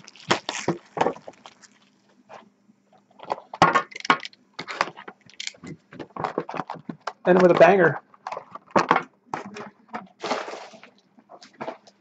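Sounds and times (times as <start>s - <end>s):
cardboard and wrapping crackling: 0.0s - 2.3s, 10.2s - 12.0s.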